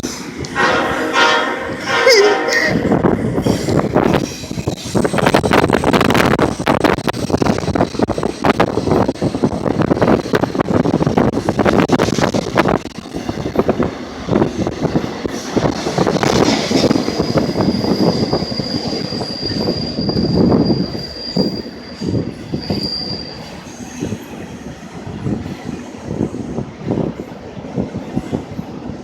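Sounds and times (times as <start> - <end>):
train wheels clattering and rumbling: 0.0 - 29.0
high wheel squeal: 16.8 - 24.3.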